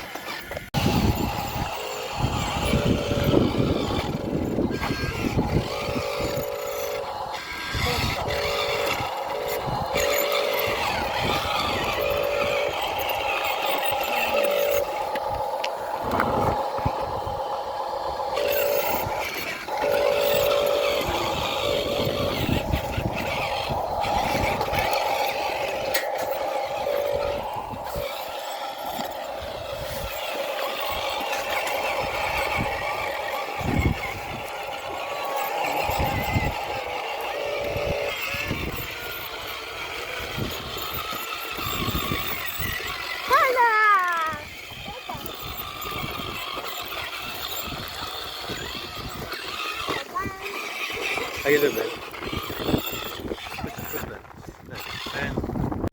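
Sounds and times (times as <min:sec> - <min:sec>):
lower-pitched motor: 0:00.0 - 0:55.9
toy electric motors whining: 0:00.0 - 0:55.9.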